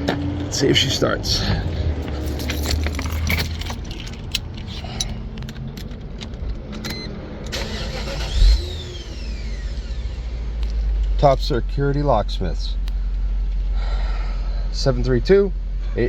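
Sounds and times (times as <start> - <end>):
car engine starting and idling: 0.0 - 16.0
keys jingling: 1.4 - 7.0.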